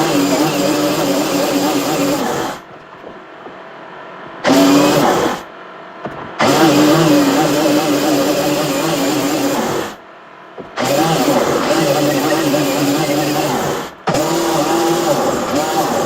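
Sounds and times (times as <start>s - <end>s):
motorised tool humming: 0.0s - 2.7s, 4.4s - 5.5s, 6.4s - 10.0s, 10.8s - 16.0s.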